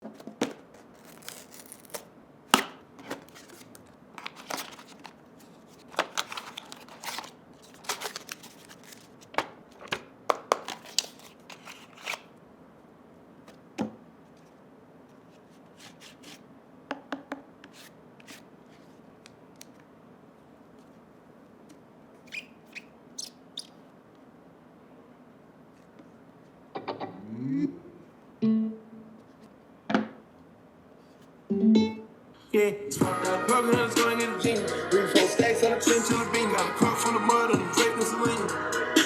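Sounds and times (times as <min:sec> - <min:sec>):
packaging rustling: 0:00.1 - 0:12.3
packaging clicks and taps: 0:05.9 - 0:12.2.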